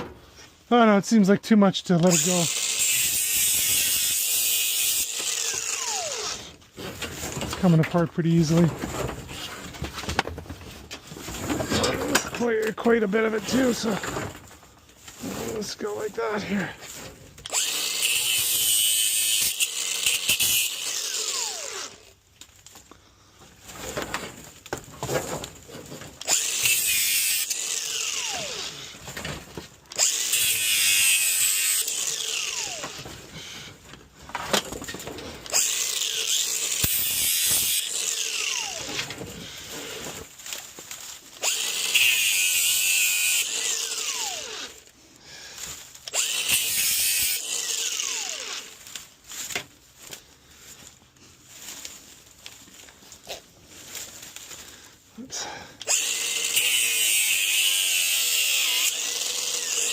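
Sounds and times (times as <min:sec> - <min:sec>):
power tool cutting metal hose: 0:02.0 - 0:07.7, 0:15.2 - 0:22.2, 0:26.0 - 0:33.7, 0:35.0 - 0:40.3, 0:41.4 - 0:44.9, 0:46.0 - 0:49.0, 0:55.4 - 0:59.9.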